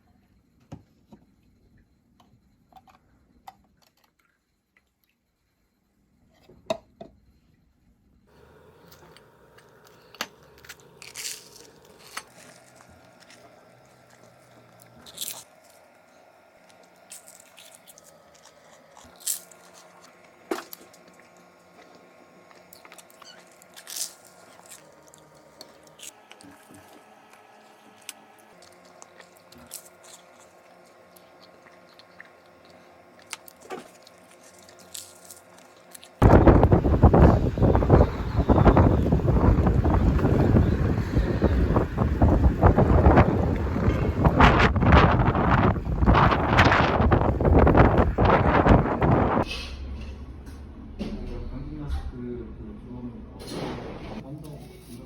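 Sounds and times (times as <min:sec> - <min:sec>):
faint steady hum: 0:00.0 - 0:55.0
person eating crunchy food: 0:08.8 - 0:36.3
wind on microphone: 0:36.2 - 0:49.5.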